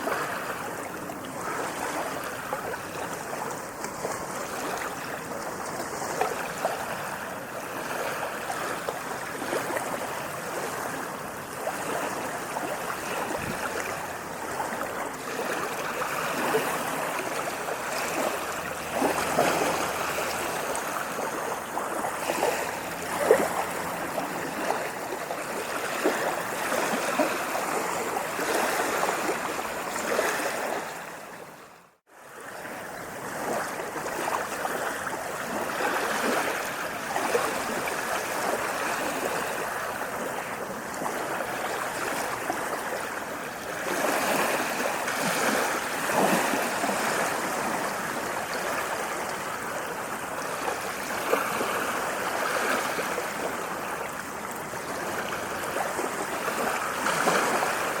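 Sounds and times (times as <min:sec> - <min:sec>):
water lapping and splashing: 0:00.0 - 0:58.0.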